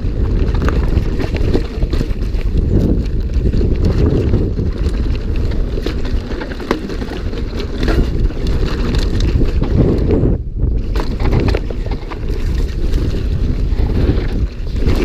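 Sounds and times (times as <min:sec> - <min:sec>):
bike rattling and clicking: 0:00.0 - 0:15.0
bike tyre noise: 0:00.0 - 0:15.0
wind rushing over microphone: 0:00.0 - 0:15.0.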